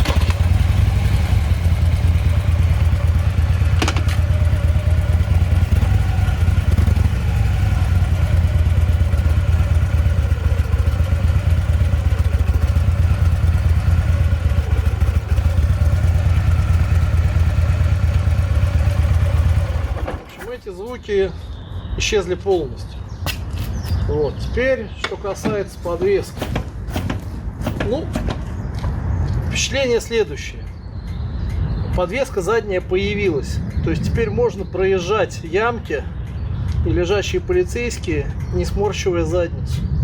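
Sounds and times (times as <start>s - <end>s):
motorcycle engine running: 0.0s - 20.6s.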